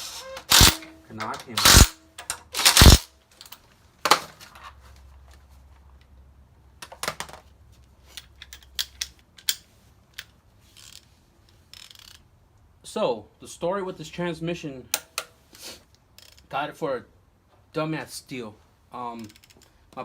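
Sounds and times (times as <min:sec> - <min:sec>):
tools and metal parts clanking: 0:00.0 - 0:04.8, 0:08.1 - 0:11.1.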